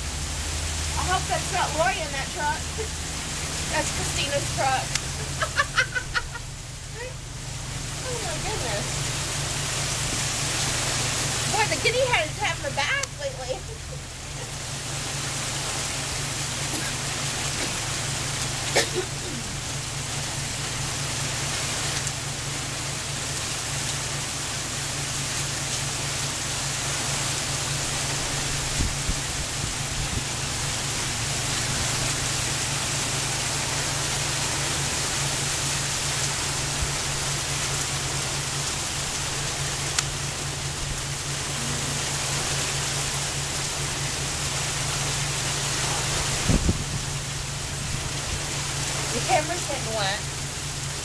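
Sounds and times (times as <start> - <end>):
heavy rain falling: 0.0 - 51.0
steady low hum: 0.0 - 51.0.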